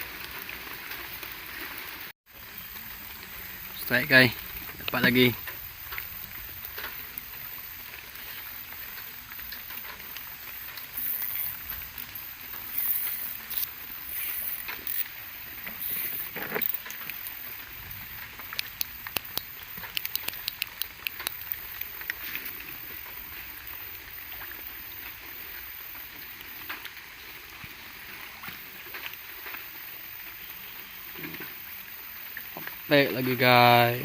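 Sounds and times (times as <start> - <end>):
background hiss: 1.6 - 34.0
sharp clicks: 18.3 - 22.2.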